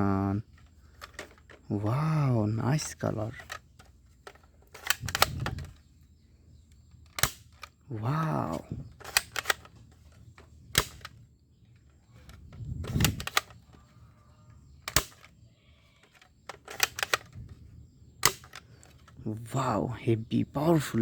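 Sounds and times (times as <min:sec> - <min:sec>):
plastic toy gun clicks: 0:00.5 - 0:01.7, 0:02.8 - 0:05.9, 0:06.9 - 0:11.2, 0:11.8 - 0:15.4, 0:16.0 - 0:17.6, 0:18.2 - 0:19.2.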